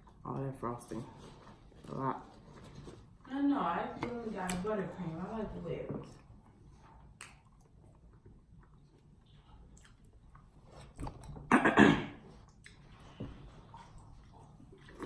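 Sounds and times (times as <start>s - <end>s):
quiet chewing: 5.2s - 11.5s, 12.2s - 15.0s.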